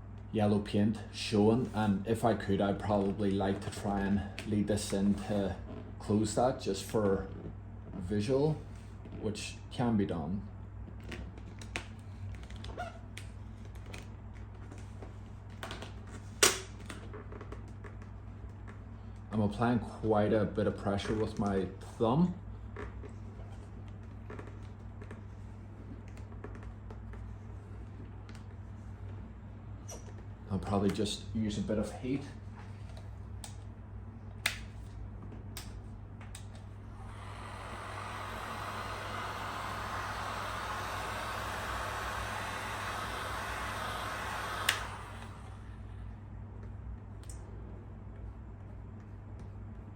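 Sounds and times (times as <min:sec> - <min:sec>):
heat gun fan blowing: 0:00.0 - 0:10.2, 0:27.3 - 0:48.8
faint steady hum: 0:00.0 - 0:49.9
sharp plastic snap: 0:34.4 - 0:34.8.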